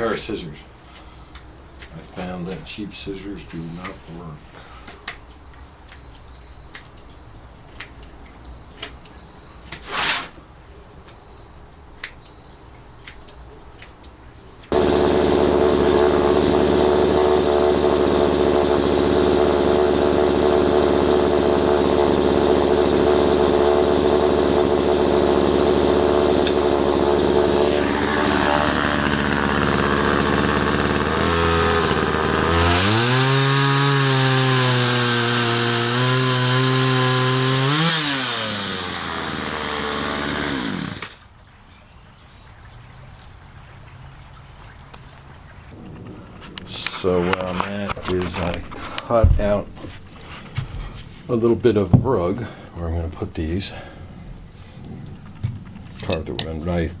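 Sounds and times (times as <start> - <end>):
power saw cutting wood: 9.8 - 10.4, 14.7 - 41.3.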